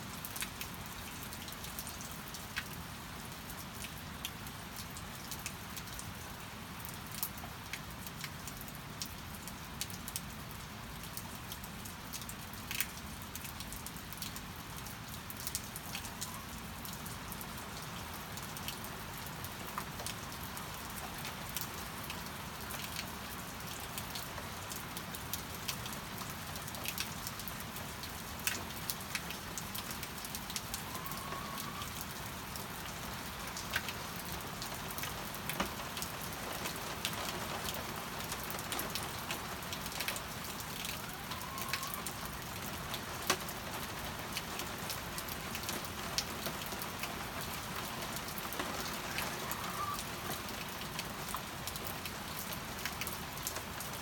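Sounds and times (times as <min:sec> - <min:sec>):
steady rain falling: 0:00.0 - 0:54.0
faint hen calls: 0:30.8 - 0:32.1, 0:40.9 - 0:42.3, 0:48.7 - 0:50.4.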